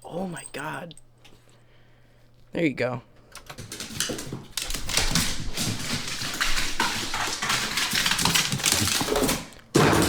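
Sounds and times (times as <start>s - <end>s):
quick clattering and scuffling: 3.5s - 10.0s.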